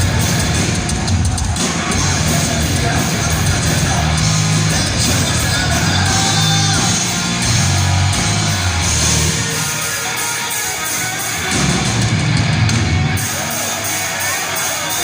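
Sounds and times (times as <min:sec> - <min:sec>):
bass line: 0:00.0 - 0:09.7, 0:11.4 - 0:13.2
electric guitar: 0:00.0 - 0:15.0
heavy metal band playing live: 0:00.0 - 0:15.0.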